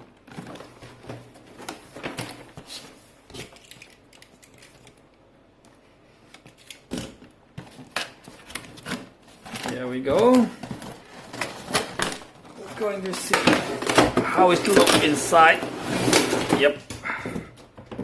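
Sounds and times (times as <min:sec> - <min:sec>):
packaging rustling: 0:07.6 - 0:16.8
toy box being opened and handled: 0:07.7 - 0:16.8.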